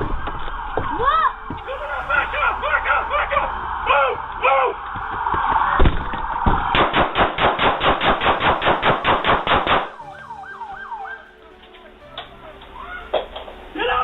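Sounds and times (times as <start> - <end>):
rapid gunfire: 6.7 - 9.9.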